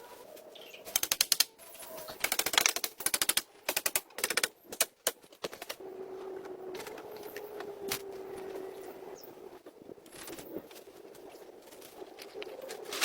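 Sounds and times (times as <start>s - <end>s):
rapid sharp clicking: 0.9s - 1.5s, 2.2s - 5.7s.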